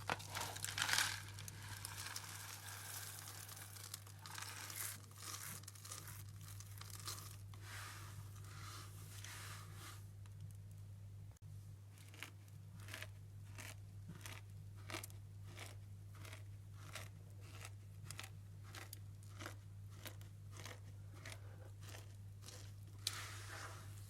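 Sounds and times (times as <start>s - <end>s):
soap shavings crunching: 0.0s - 7.6s, 12.0s - 23.2s.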